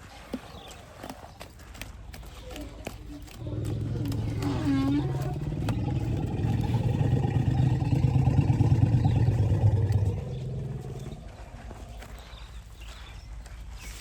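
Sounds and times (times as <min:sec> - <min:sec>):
elephant rumbling: 0:02.7 - 0:12.2.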